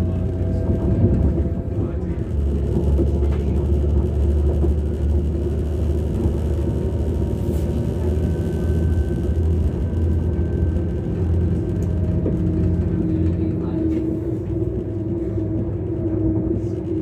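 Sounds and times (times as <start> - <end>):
diesel engine droning: 0.0 - 17.0
faint high whine: 5.4 - 12.6.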